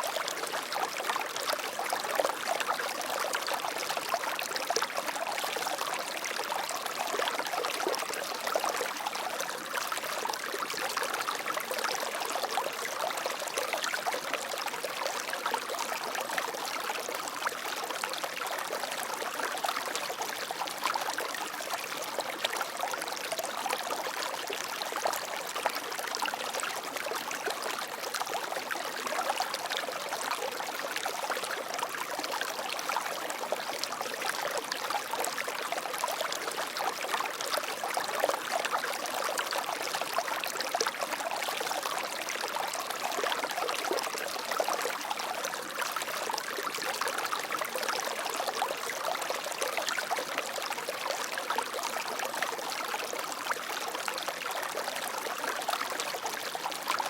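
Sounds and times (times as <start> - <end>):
water flowing over stones: 0.0 - 57.0.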